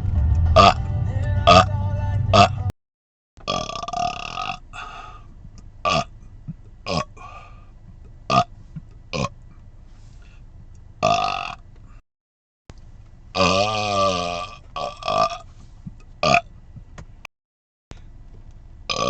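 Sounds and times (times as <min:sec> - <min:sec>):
man burping: 0:01.5 - 0:01.7, 0:02.3 - 0:02.7, 0:03.5 - 0:05.1, 0:05.9 - 0:06.1, 0:06.9 - 0:07.5, 0:11.0 - 0:11.6, 0:13.4 - 0:15.4, 0:16.2 - 0:16.4.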